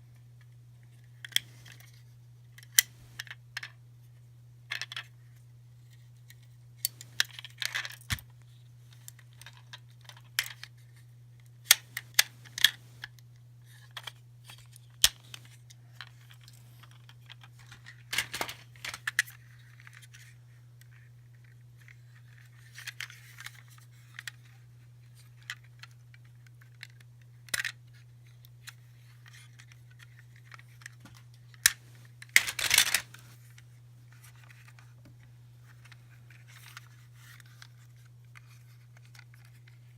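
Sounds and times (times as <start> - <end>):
steady low hum: 0.0 - 22.0
plastic toys clicking and tapping: 16.4 - 19.3, 30.8 - 33.2
packaging rustling: 17.5 - 19.2, 31.7 - 33.6.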